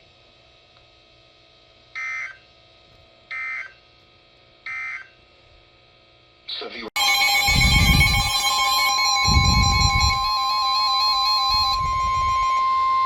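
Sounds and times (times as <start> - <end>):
steady single-pitched beep: 7.0 - 12.5
warbling tones: 7.0 - 13.0.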